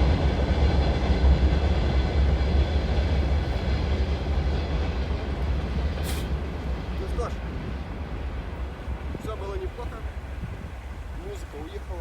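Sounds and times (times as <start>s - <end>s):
train rumbling on rails: 0.0s - 12.0s.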